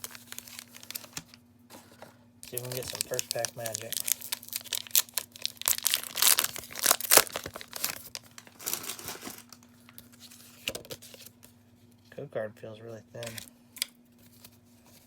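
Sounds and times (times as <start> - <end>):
foil wrapper crinkling and tearing: 0.0 - 1.4, 2.4 - 11.3, 13.2 - 13.5
handling of cards: 0.0 - 11.6, 13.2 - 15.0.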